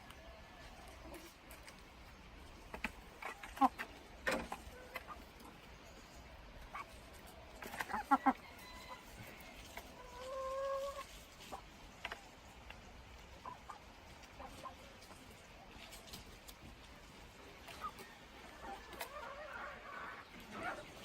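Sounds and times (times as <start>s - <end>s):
chicken clucking: 0.0s - 21.0s
chicken drawn-out call: 7.6s - 11.2s, 17.7s - 21.0s.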